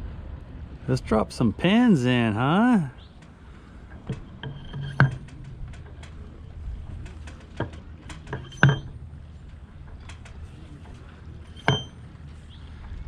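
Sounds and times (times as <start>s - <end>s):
metal pins knocking into wood: 4.0s - 6.2s, 7.1s - 9.0s, 11.6s - 12.0s.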